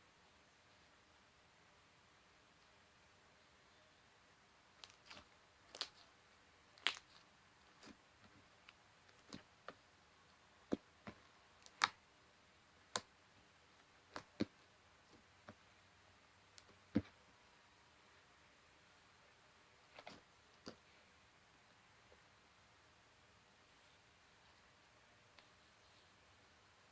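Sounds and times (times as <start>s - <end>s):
slime clicking and popping: 6.8s - 7.2s, 11.6s - 12.0s.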